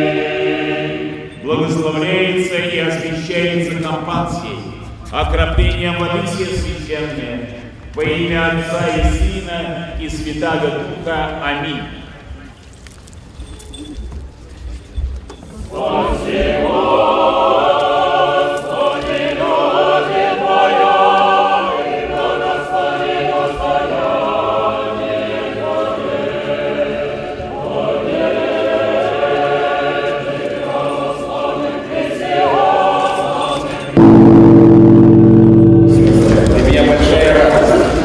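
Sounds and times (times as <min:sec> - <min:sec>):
choir singing unaccompanied chant: 0:00.0 - 0:01.4, 0:15.7 - 0:38.0
deep church bell toll: 0:34.0 - 0:38.0.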